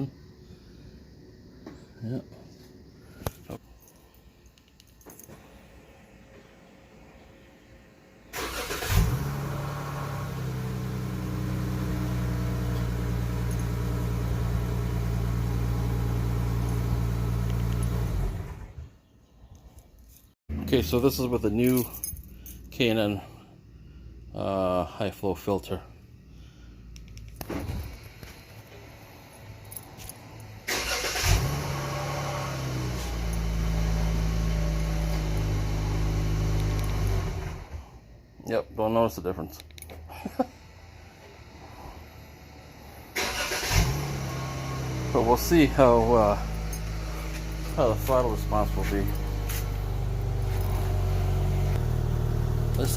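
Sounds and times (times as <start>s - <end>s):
car engine idling: 7.8s - 18.7s, 40.6s - 52.9s
car engine starter cranking: 8.3s - 10.2s, 30.6s - 33.6s, 43.1s - 51.4s
car engine cranking and starting: 8.3s - 18.9s, 27.8s - 38.0s, 42.4s - 52.9s.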